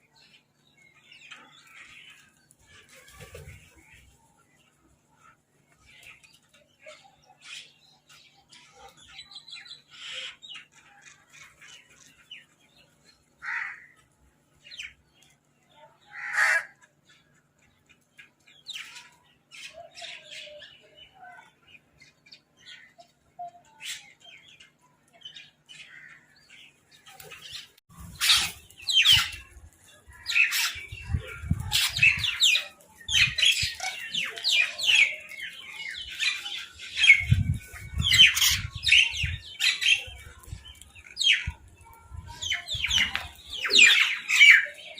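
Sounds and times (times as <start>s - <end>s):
crows and mynahs squawking: 13.4s - 14.0s, 16.0s - 17.2s, 25.8s - 26.4s, 27.9s - 40.3s.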